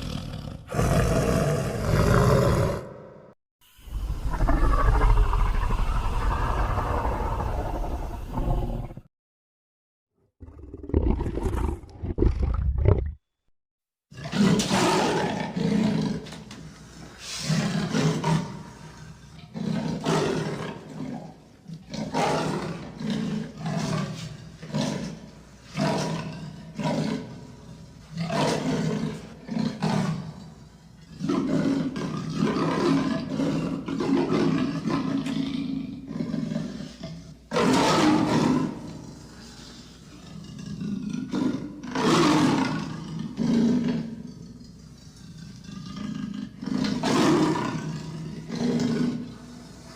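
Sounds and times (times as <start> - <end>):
deep monster growls: 0.0 - 3.4, 4.0 - 9.1, 10.4 - 13.2, 31.1 - 44.6
low rumble: 3.9 - 9.1.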